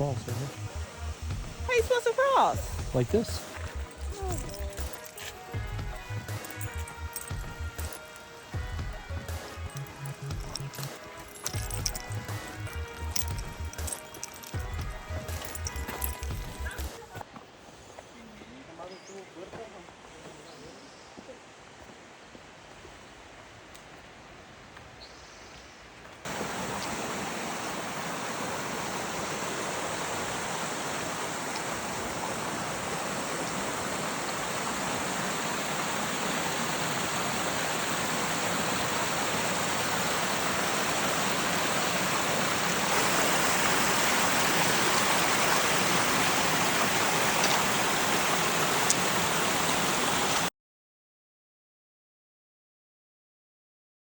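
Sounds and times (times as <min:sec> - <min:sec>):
stream water running: 0:00.0 - 0:17.2, 0:26.0 - 0:50.5.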